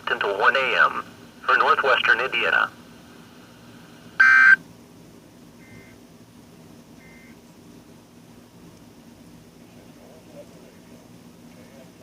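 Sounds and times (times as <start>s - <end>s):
digital data tone bursts: 4.2s - 4.6s.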